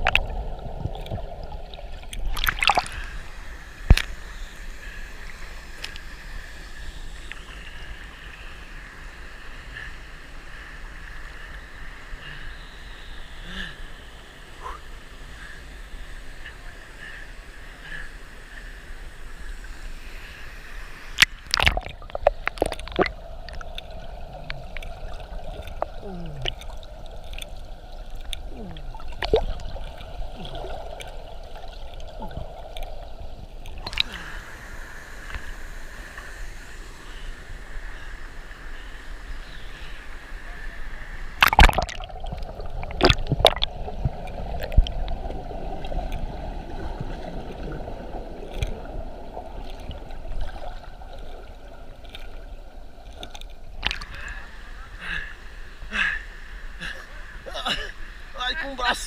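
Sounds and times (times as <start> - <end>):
stream water running and gurgling: 0.0 - 59.0.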